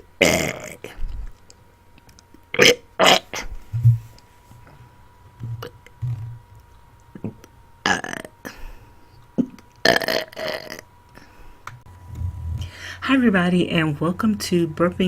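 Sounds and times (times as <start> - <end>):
person belching: 0.2 - 0.8, 2.5 - 3.4, 7.2 - 8.4, 9.4 - 10.9.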